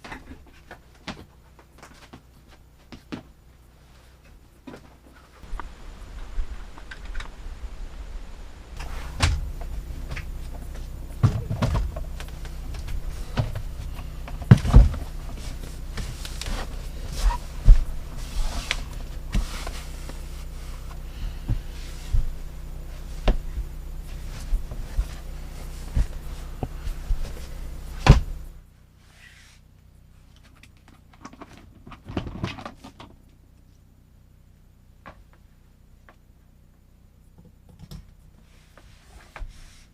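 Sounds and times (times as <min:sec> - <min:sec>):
steady hum: 0:00.0 - 0:39.9
objects knocking and thudding: 0:08.8 - 0:20.1.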